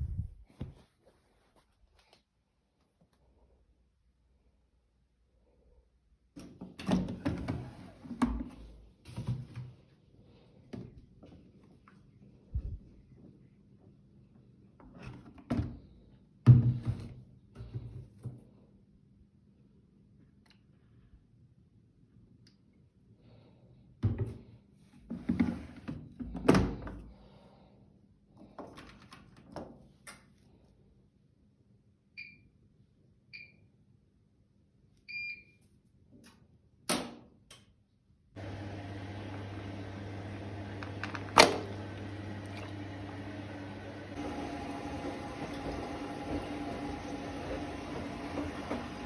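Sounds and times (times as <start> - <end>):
low mechanical hum: 38.4 - 49.0.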